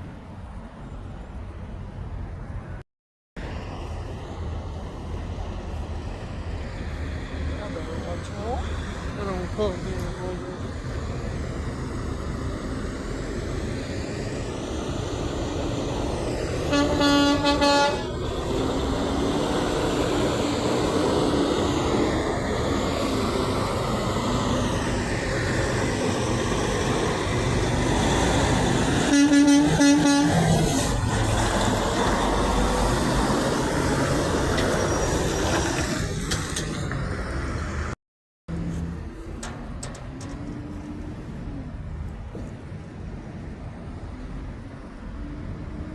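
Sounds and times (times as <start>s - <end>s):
truck engines and traffic: 0.0s - 2.8s, 3.4s - 45.9s
truck horn blasts: 16.6s - 18.2s, 29.0s - 30.6s.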